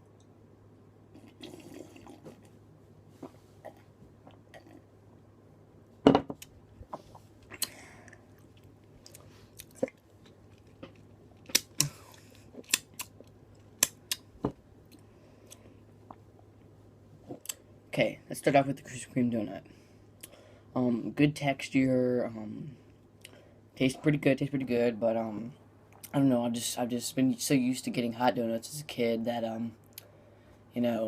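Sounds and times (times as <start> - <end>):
person chewing food: 7.0 - 16.3.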